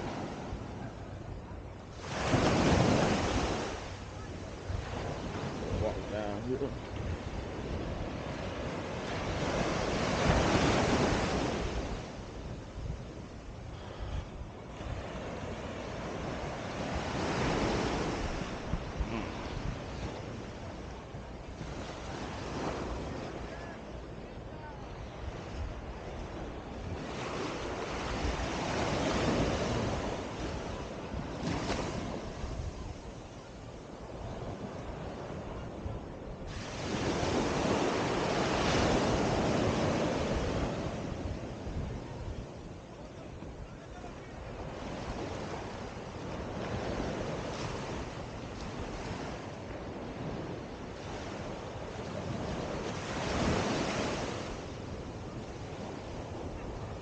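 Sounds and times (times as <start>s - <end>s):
wind on microphone: 0.0s - 57.0s
surf breaking on beach: 1.9s - 13.0s, 13.7s - 20.9s, 26.8s - 33.3s, 36.0s - 42.3s, 43.1s - 57.0s.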